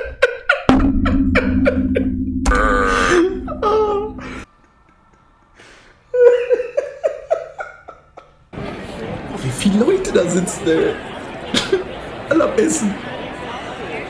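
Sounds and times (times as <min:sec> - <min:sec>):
person laughing: 0:00.0 - 0:05.2, 0:11.6 - 0:11.9.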